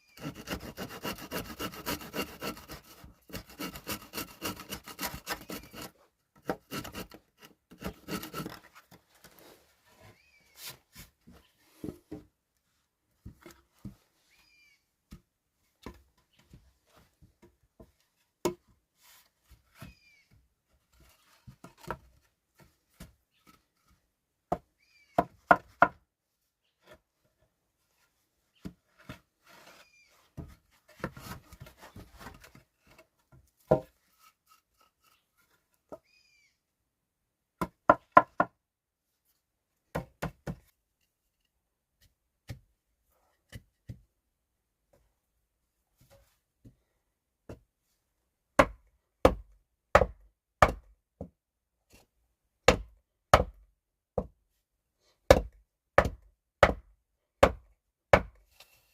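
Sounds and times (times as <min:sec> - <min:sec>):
tool chopping wood: 0:48.6 - 0:50.9, 0:52.7 - 0:53.6, 0:55.3 - 0:58.4.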